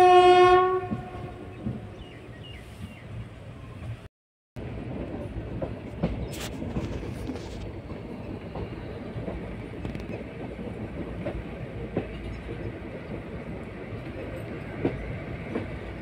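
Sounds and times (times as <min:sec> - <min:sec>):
train rumbling on track: 0:00.0 - 0:16.0
wheels clicking on rails: 0:04.9 - 0:16.0.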